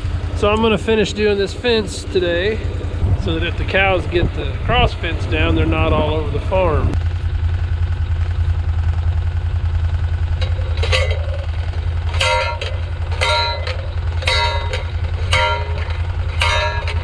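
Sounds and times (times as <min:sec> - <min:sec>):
engine running: 0:00.0 - 0:17.0
metallic post pounder blows: 0:10.1 - 0:17.0.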